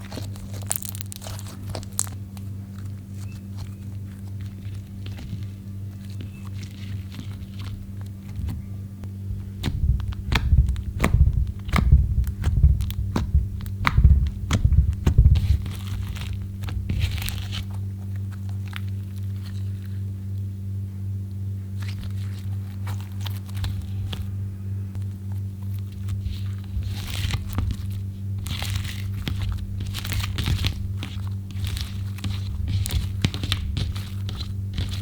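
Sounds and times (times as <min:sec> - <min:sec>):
steady low hum: 0:00.0 - 0:35.0
sticky slime clicks and pops: 0:09.6 - 0:16.3.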